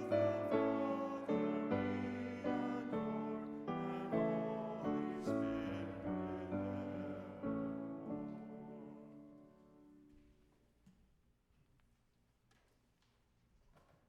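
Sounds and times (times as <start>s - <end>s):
piano chords: 0.0s - 10.1s.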